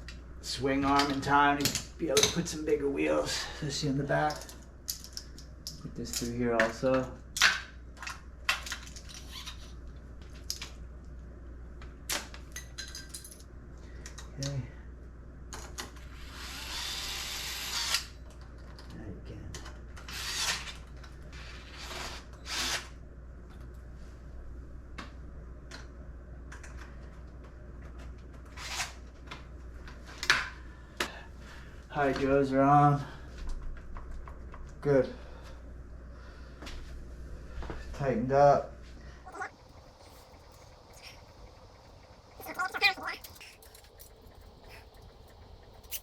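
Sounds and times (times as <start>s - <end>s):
faint low hum: 22.9s - 46.0s
small metal parts clicking: 39.3s - 46.0s.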